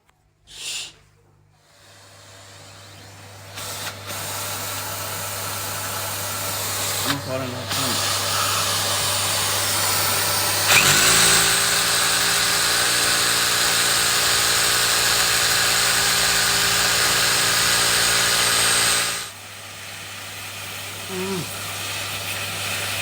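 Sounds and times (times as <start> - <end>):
electric drill boring into wall: 1.7 - 19.9.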